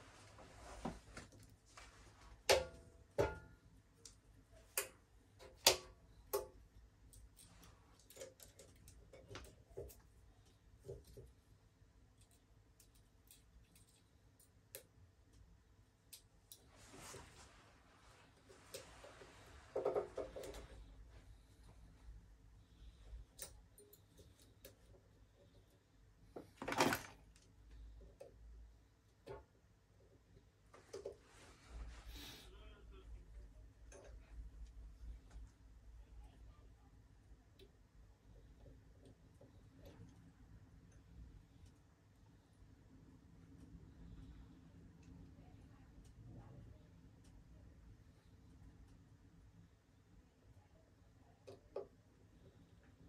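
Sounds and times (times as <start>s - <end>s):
small tools clicking and tapping: 4.0s - 11.4s, 12.1s - 15.5s.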